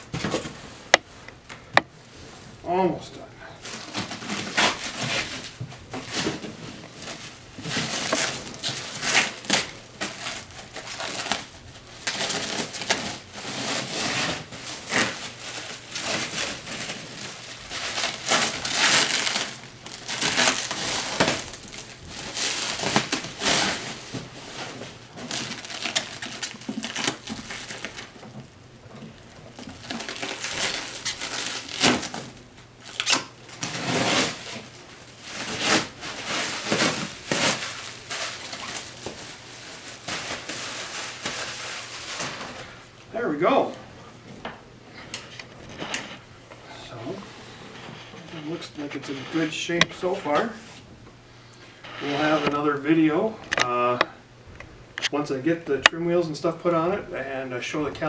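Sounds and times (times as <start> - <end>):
packing material crinkling: 3.4 - 43.8.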